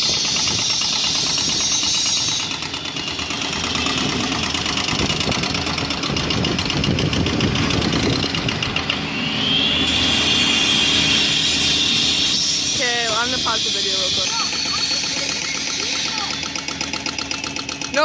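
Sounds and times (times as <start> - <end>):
heavy machinery engine pulsing: 0.0 - 18.0
rising whine: 6.2 - 16.8.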